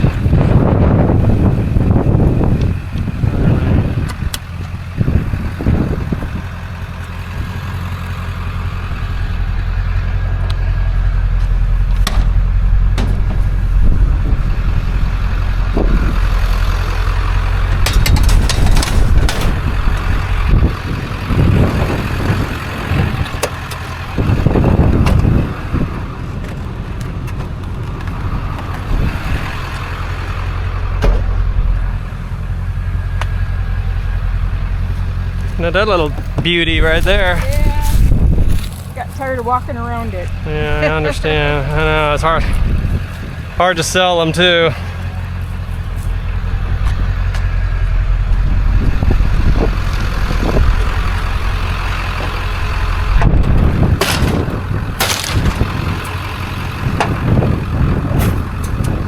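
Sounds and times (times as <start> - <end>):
vehicle engine and road rumble: 0.0 - 59.0
loud thumps: 11.8 - 14.4, 30.9 - 31.8, 53.2 - 56.1.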